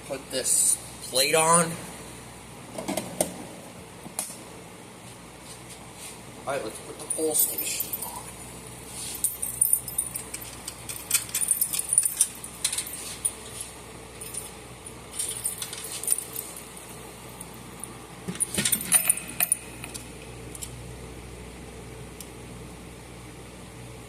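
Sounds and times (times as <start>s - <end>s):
faint steady hum: 0.0s - 24.0s
metal and plastic parts clinking: 10.3s - 13.0s.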